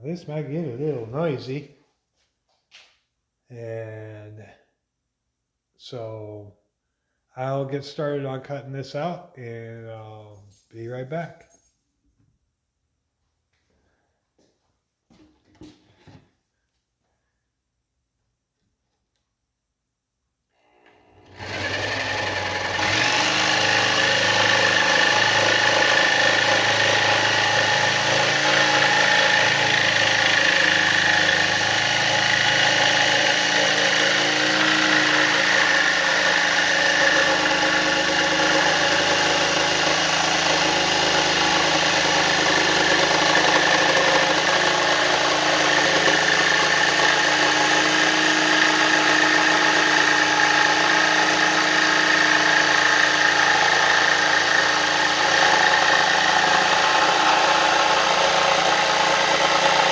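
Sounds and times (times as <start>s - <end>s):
power tool cutting with whine: 20.6s - 59.9s.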